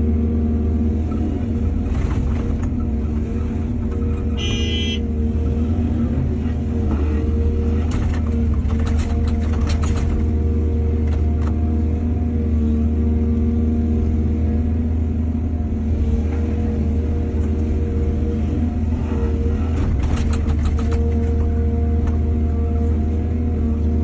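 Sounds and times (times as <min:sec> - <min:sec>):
excavator diesel engine running: 0:00.0 - 0:24.0
short high-pitched tone: 0:04.4 - 0:05.0
sharp knocks and clatter: 0:07.8 - 0:10.4, 0:19.8 - 0:21.4.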